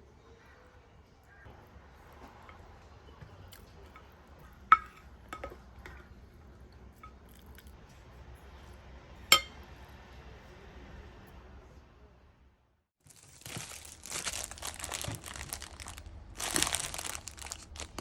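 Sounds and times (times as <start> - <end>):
glass clinking: 9.3 - 9.6.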